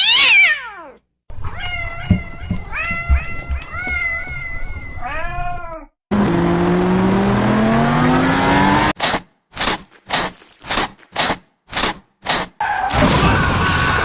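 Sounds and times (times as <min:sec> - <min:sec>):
cat meowing: 0:00.0 - 0:06.0
engine-like sound rising in pitch: 0:06.1 - 0:09.0.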